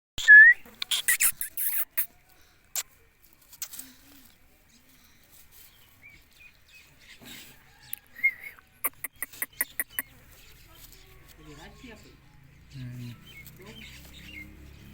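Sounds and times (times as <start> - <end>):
parakeet chirping: 0.2 - 2.1, 8.8 - 10.2
sharp clicks and taps: 8.8 - 10.1.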